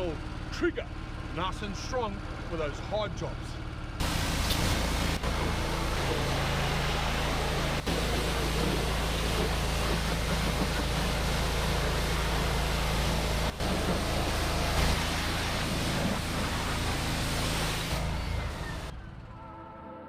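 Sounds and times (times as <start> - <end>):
petrol engine droning: 0.0 - 20.0
water jet hissing: 4.0 - 18.9.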